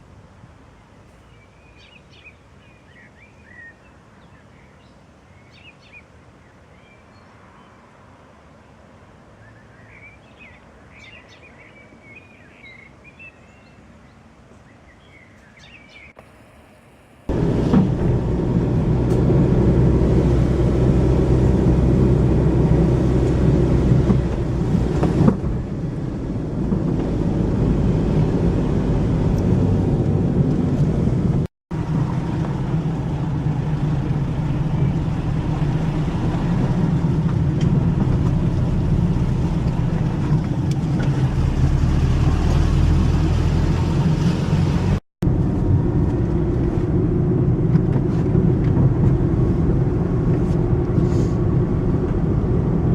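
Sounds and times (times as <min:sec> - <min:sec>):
small birds chirping: 0:01.1 - 0:07.8, 0:09.4 - 0:16.2
vehicle engine running low: 0:16.2 - 0:52.9.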